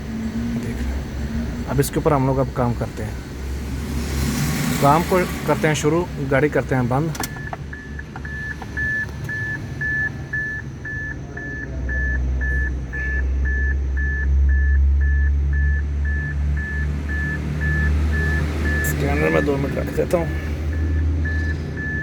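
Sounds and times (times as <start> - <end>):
electronic warning beeps: 7.2 - 22.0.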